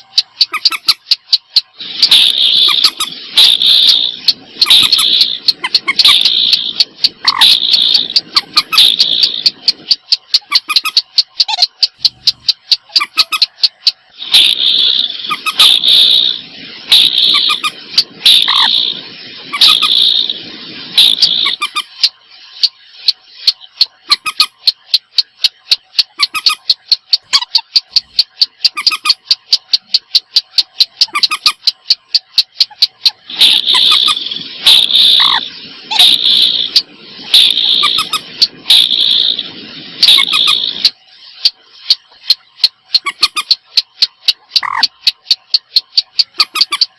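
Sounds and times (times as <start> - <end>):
fast sharp clicking bird notes: 0.0 - 46.9
harsh bird calls: 1.8 - 9.5, 14.2 - 20.4, 21.0 - 22.0, 32.6 - 39.4.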